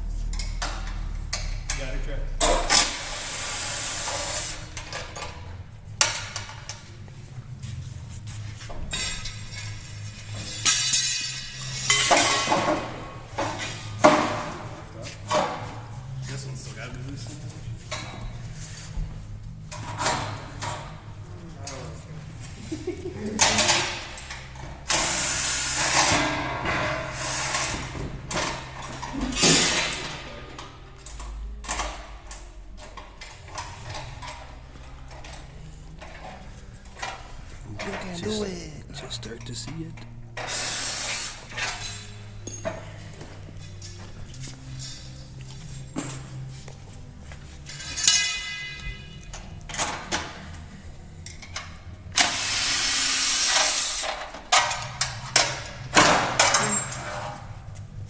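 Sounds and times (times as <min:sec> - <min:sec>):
background music: 0:00.0 - 0:58.0
metal crate parts clanking: 0:08.7 - 0:15.9, 0:26.0 - 0:38.6, 0:47.6 - 0:50.6, 0:54.0 - 0:57.8.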